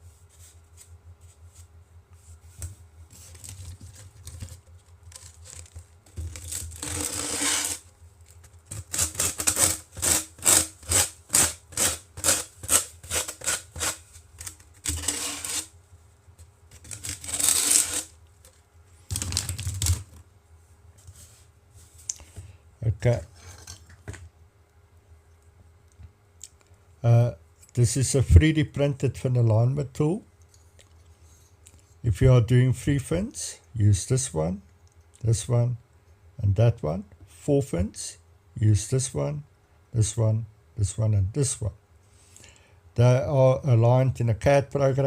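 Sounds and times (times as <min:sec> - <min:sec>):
rubbing on a hard surface: 0:06.8 - 0:07.9, 0:14.8 - 0:15.7, 0:17.0 - 0:18.1.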